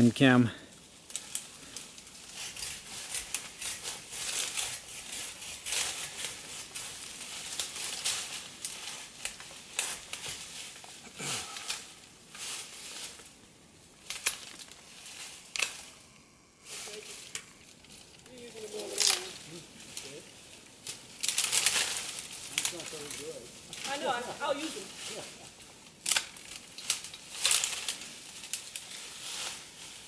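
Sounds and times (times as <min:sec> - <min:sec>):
branches and leaves rustling: 0:00.0 - 0:30.0
twigs snapping: 0:01.0 - 0:04.8, 0:14.0 - 0:15.9, 0:17.2 - 0:24.1, 0:25.5 - 0:29.0.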